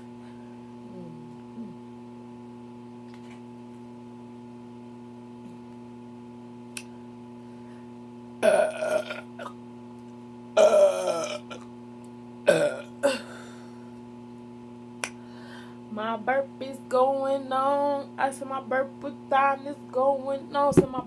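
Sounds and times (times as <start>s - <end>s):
woman belching: 8.4s - 9.6s, 10.6s - 11.7s, 12.5s - 13.5s.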